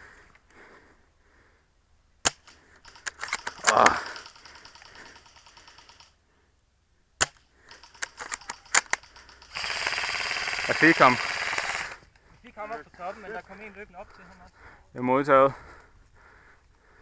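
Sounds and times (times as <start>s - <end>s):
airsoft rifle shots snapping: 7.2s - 10.0s.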